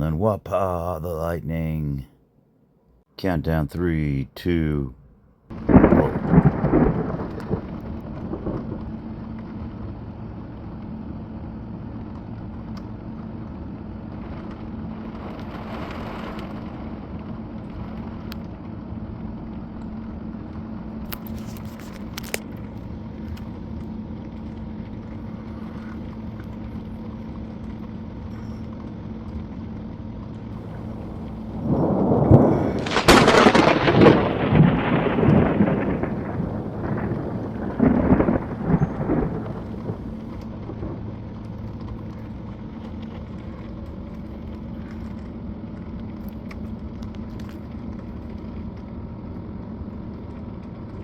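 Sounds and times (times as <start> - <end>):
low machine hum: 3.2 - 15.6, 16.6 - 47.0
thunderclap: 5.5 - 9.9, 30.6 - 41.9
constant hiss: 30.6 - 41.7.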